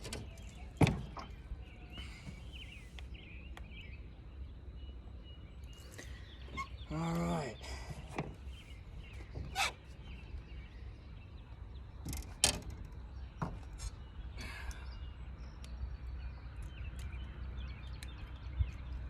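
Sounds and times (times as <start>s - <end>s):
bird chirps: 0.0s - 12.0s.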